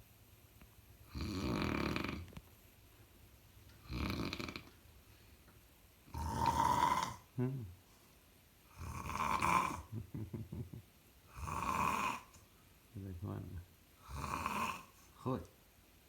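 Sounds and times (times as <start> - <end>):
person snoring: 1.1 - 2.3, 3.8 - 4.7, 6.1 - 7.7, 8.7 - 10.0, 11.3 - 12.4, 14.0 - 15.0.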